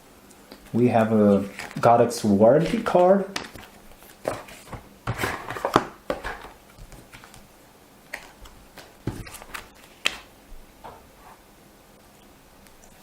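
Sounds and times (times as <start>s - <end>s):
paper packaging rustling: 1.0s - 7.5s, 8.1s - 10.3s.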